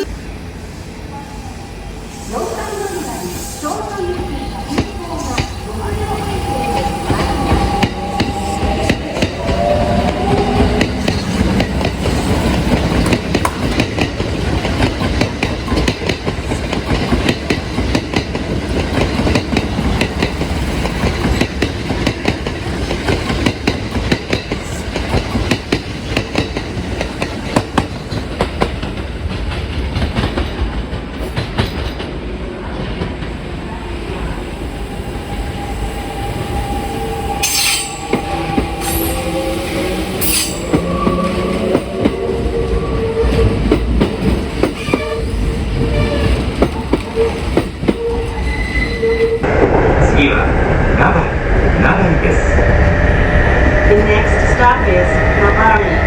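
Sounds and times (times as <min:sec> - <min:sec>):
train wheels clattering over rails: 0:06.6 - 0:33.6, 0:37.4 - 0:49.4
high wheel squeal: 0:35.7 - 0:41.6, 0:47.2 - 0:49.4.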